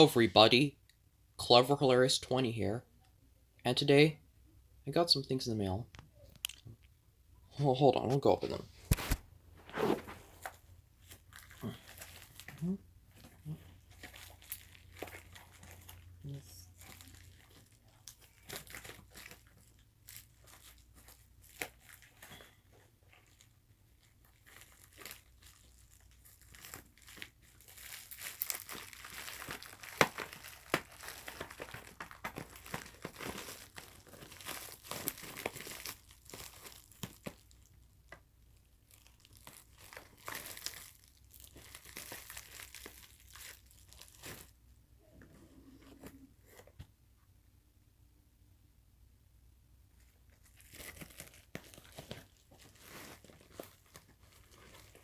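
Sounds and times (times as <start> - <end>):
packaging crinkling and tearing: 8.1 - 44.6, 50.0 - 55.0.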